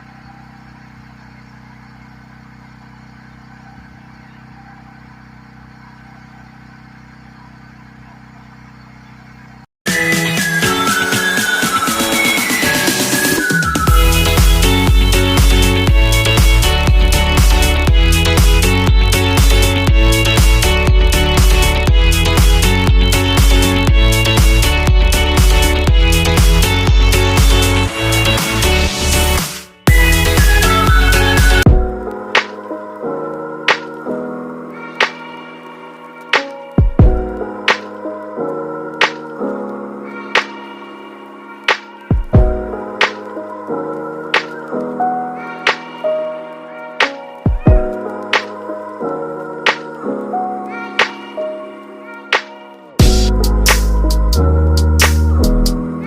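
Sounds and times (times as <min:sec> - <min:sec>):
low motor hum: 0:00.0 - 0:09.7, 0:13.9 - 0:33.6, 0:53.0 - 0:56.0
background music with steady beat: 0:09.9 - 0:56.0.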